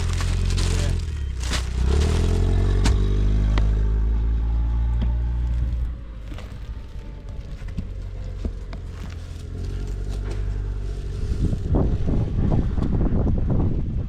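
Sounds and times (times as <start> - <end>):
items being handled: 0.0 - 2.9, 5.4 - 11.8
vehicle engine revving: 0.0 - 13.2.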